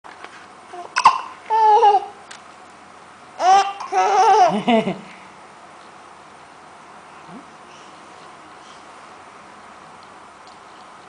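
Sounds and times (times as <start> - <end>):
baby babbling: 0.7 - 2.2, 3.4 - 4.5
baby hiccup: 1.0 - 1.3
baby laughing: 3.4 - 5.1.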